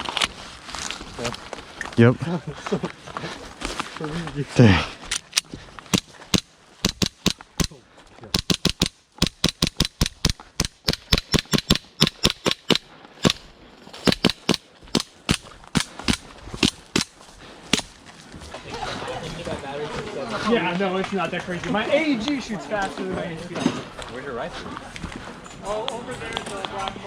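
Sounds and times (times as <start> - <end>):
airsoft gun shots: 5.9 - 17.1.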